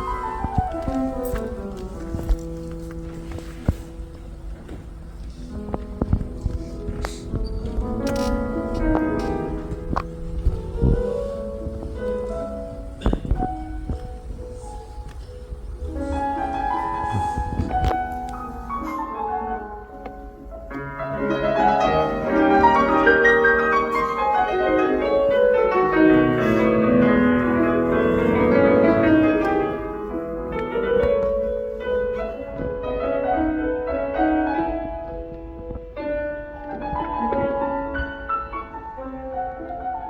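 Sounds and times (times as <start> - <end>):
orchestra playing classical music: 20.7 - 32.1.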